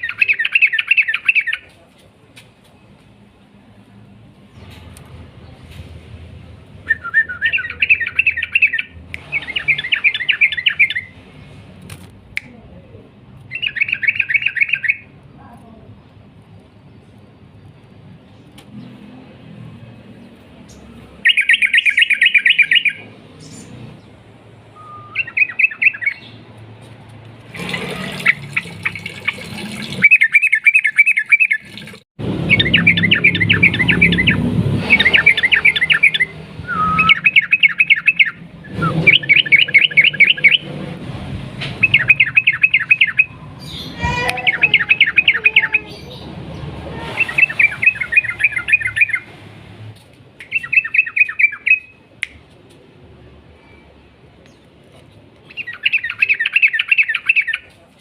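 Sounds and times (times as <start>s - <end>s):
bird singing rolling trills: 0.0s - 1.7s, 6.8s - 11.2s, 13.5s - 15.1s, 20.6s - 26.4s, 27.6s - 31.8s, 32.5s - 40.7s, 41.8s - 49.3s, 50.5s - 52.1s, 55.4s - 57.6s.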